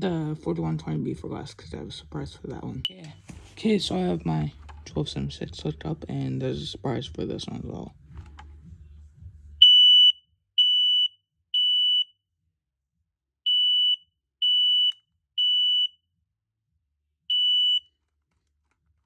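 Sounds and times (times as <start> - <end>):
smoke alarm high-pitched beeps: 9.6 - 12.1, 13.5 - 16.0, 17.3 - 17.9.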